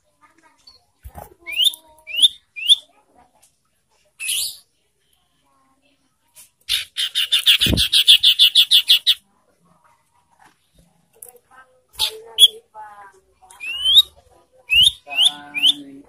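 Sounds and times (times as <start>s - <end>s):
bird chirps and trill: 1.4s - 2.9s, 4.2s - 4.6s, 6.7s - 9.2s, 13.5s - 15.9s.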